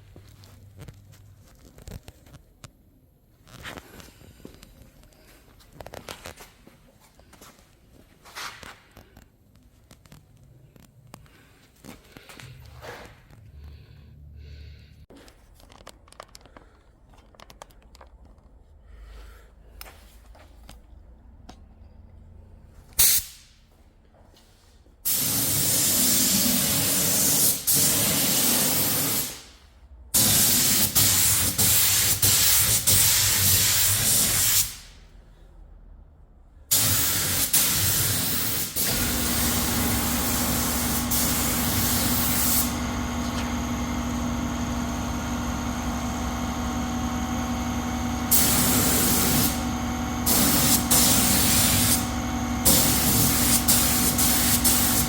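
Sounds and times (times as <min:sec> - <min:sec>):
compressed air hissing: 0:23.0 - 0:23.5, 0:25.1 - 0:29.5, 0:30.2 - 0:35.0, 0:36.7 - 0:43.9, 0:48.2 - 0:55.0
motor humming: 0:38.8 - 0:55.0.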